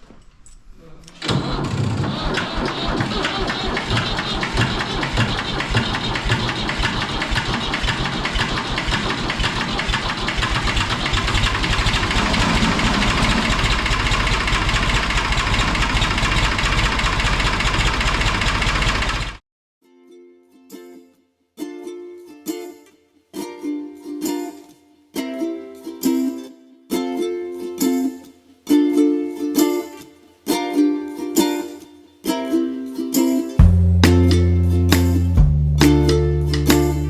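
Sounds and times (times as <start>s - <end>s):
tractor engine starting and running: 1.2s - 19.4s, 33.6s - 37.0s.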